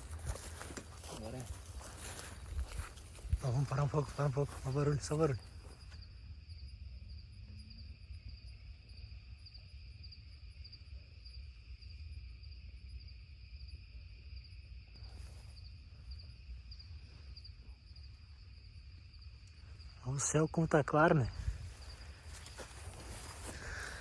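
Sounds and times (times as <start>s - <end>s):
rustle: 0.0s - 3.4s
crickets chirping: 0.0s - 24.0s.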